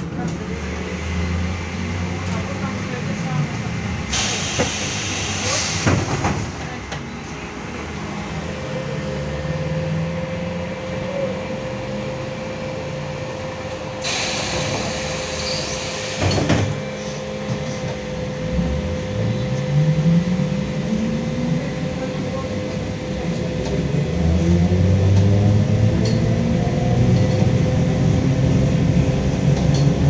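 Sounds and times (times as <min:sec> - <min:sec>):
trolleybus running rumble: 0:00.0 - 0:30.0
air hiss: 0:04.1 - 0:06.4, 0:14.0 - 0:16.5.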